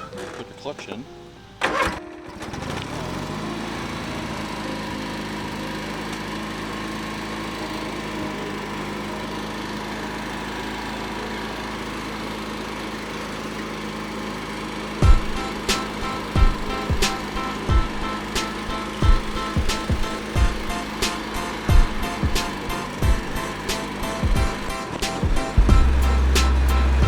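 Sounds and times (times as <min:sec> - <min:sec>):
lawn mower engine running: 0:00.0 - 0:27.0
sharp knocks: 0:15.0 - 0:26.8.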